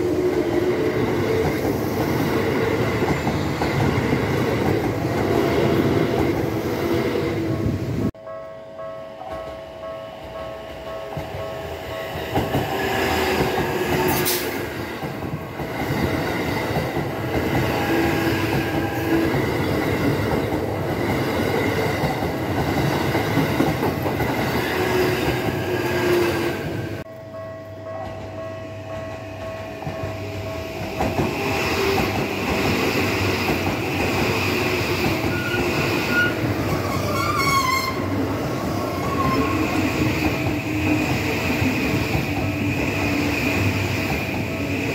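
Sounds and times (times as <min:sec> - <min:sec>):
train wheels clattering on rails: 0:00.0 - 0:06.5, 0:09.3 - 0:27.1, 0:28.0 - 0:44.9
high wheel squeal: 0:35.2 - 0:38.2.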